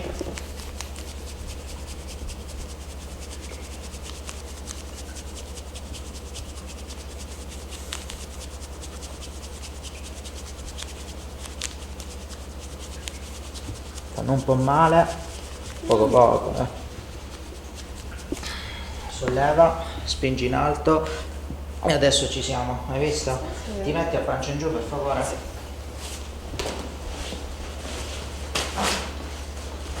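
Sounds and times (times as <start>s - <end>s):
hands rubbing over skin: 0.0s - 23.6s, 24.7s - 26.5s
constant low hum: 0.0s - 30.0s.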